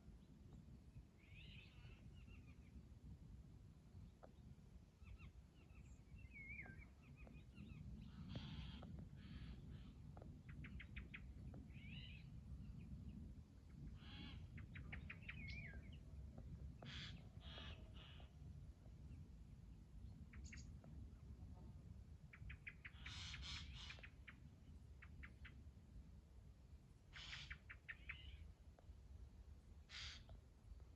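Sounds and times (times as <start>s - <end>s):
steady low rumble: 0.0s - 27.1s
songbirds chirping: 3.8s - 25.8s.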